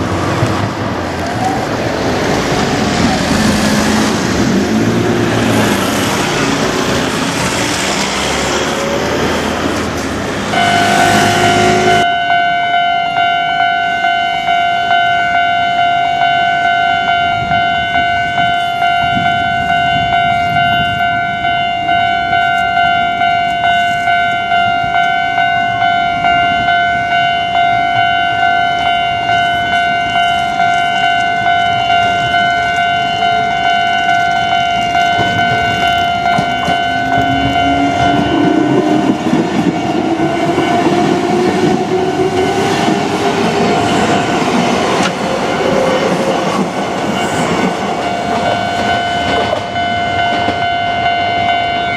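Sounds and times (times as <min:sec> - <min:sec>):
train motor whine: 0:00.4 - 0:12.1, 0:17.0 - 0:51.9
electronic level crossing bell: 0:10.5 - 0:41.2, 0:48.0 - 0:51.9.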